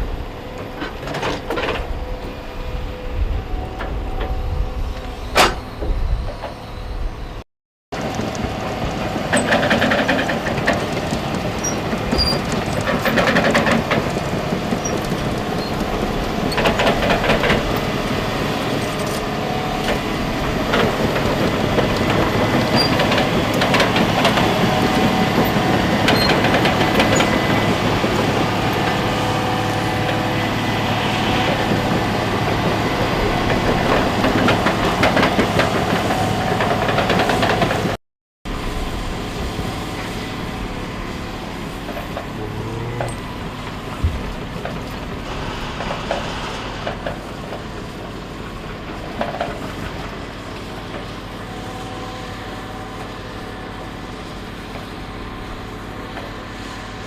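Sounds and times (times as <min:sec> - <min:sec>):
metallic clanks and squeaks: 0:05.2 - 0:07.0, 0:11.6 - 0:13.8, 0:14.7 - 0:17.8, 0:22.0 - 0:24.0, 0:25.4 - 0:27.4, 0:41.9 - 0:48.0
diesel engine droning: 0:08.0 - 0:37.6, 0:38.5 - 0:57.0.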